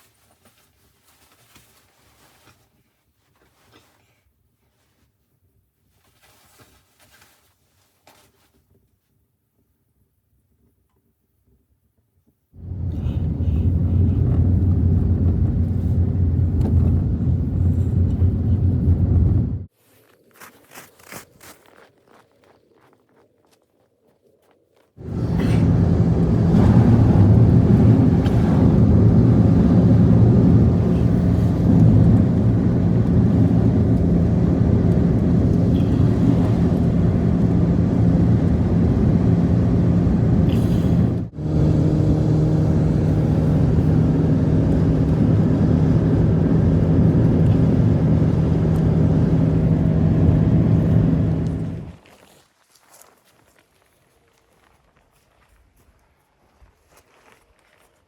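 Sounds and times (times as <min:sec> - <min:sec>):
engine rumble: 0:12.6 - 0:19.7, 0:25.0 - 0:52.0.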